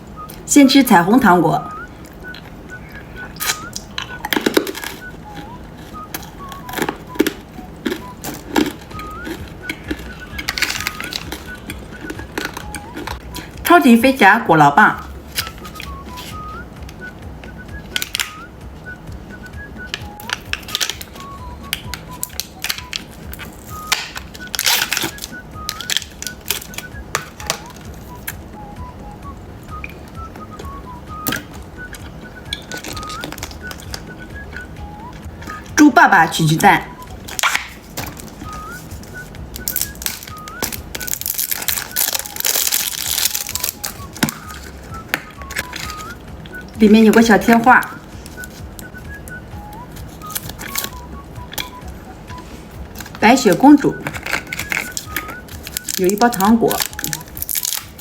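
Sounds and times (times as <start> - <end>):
soft background music: 0.0 - 58.0
candy wrapper crackling and eating: 1.7 - 13.7, 15.0 - 16.6, 17.5 - 19.0, 19.8 - 28.7, 29.8 - 35.8, 36.9 - 47.2, 47.8 - 58.0.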